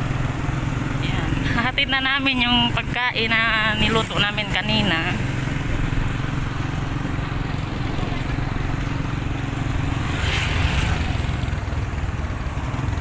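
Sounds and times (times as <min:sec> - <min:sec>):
vehicle engine running: 0:00.0 - 0:13.0
brief rushing noise: 0:10.0 - 0:11.4.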